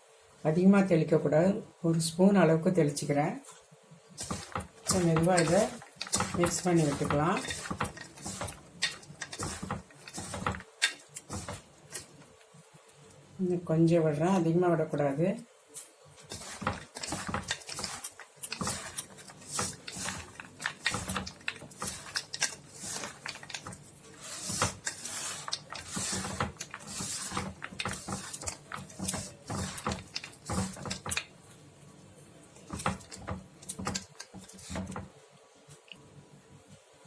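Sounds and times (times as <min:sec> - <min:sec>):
peanuts tossed in a bowl: 0:04.2 - 0:12.1, 0:16.3 - 0:31.4.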